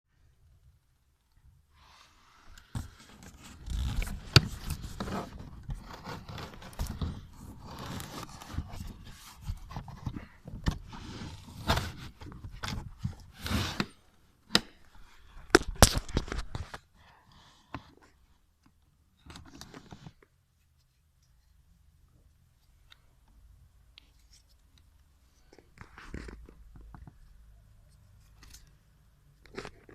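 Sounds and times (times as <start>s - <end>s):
scraping and rustling: 2.7s - 14.0s.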